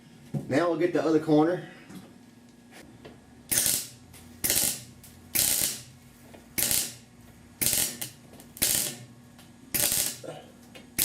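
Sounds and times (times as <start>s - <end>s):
man talking: 0.5s - 1.8s
welding arc crackle: 3.5s - 10.3s.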